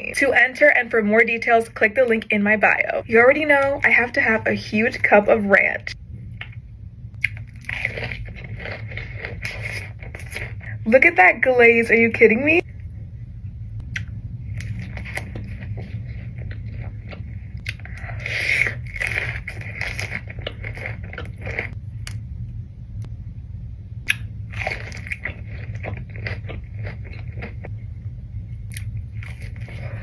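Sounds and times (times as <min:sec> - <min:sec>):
steady low hum: 0:00.0 - 0:30.0
wet chewing: 0:06.4 - 0:10.7, 0:13.8 - 0:22.2, 0:24.1 - 0:27.8, 0:28.7 - 0:30.0
crunchy bites: 0:24.1 - 0:27.7.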